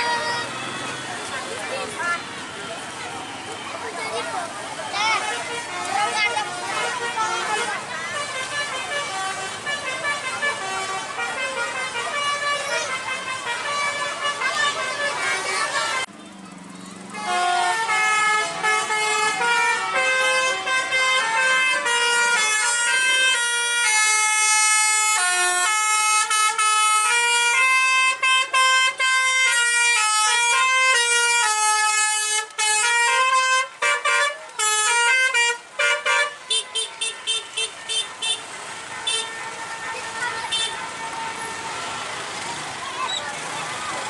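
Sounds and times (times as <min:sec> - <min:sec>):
bus horns playing a tune: 0:04.9 - 0:16.1, 0:17.0 - 0:42.5.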